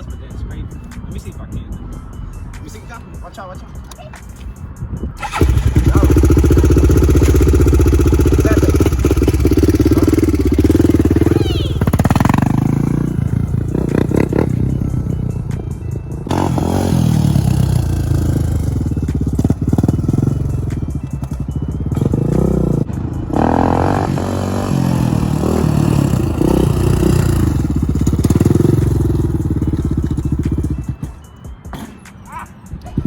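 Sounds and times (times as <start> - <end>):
quad engine revving hard: 5.2 - 14.7, 16.3 - 18.7, 22.0 - 30.8.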